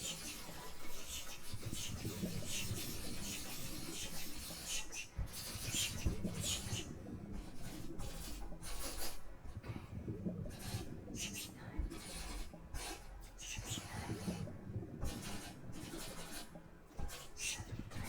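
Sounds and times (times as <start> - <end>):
rubbing and scratching on microphone: 10.5 - 18.0.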